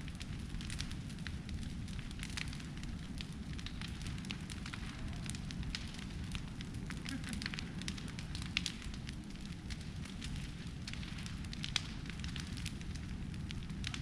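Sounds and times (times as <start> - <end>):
fire crackling and popping: 0.0 - 14.0
low rush of flame: 0.0 - 14.0.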